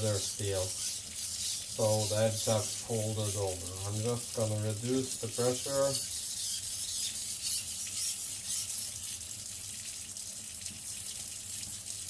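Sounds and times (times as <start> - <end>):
knife scraping on whetstone: 0.0 - 3.5, 5.4 - 9.3.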